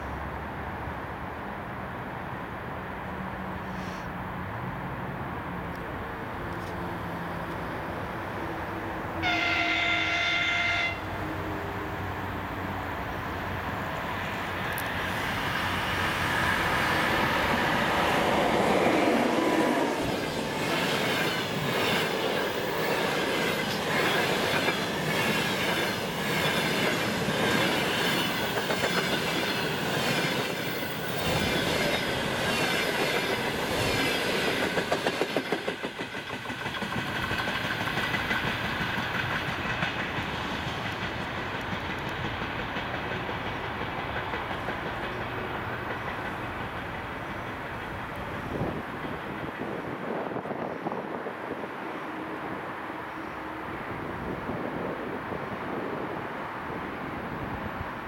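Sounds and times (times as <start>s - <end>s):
locomotive horn: 9.2s - 11.2s
train wheels clicking over rail joints: 14.6s - 48.3s.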